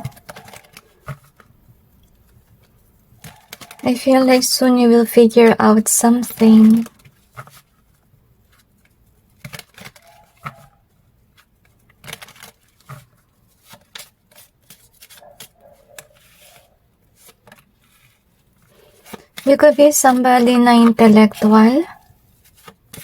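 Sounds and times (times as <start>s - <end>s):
cards being handled: 11.4s - 19.8s.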